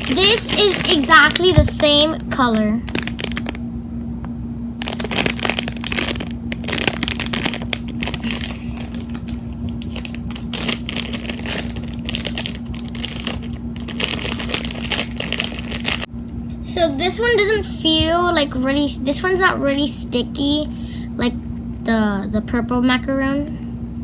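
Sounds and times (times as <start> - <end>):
plastic packaging crinkling: 0.0 - 3.6, 4.8 - 16.1.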